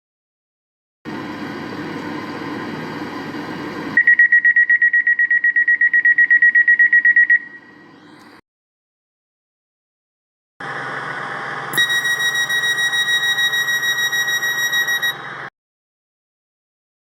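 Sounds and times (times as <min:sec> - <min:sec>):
rapid high-pitched warning beeps: 0:04.0 - 0:07.8, 0:11.8 - 0:15.5.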